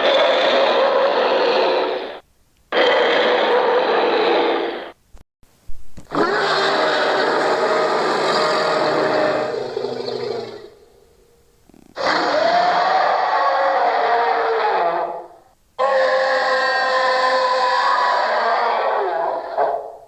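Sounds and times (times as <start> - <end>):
raspy creature growls: 6.1 - 10.8, 11.7 - 15.2.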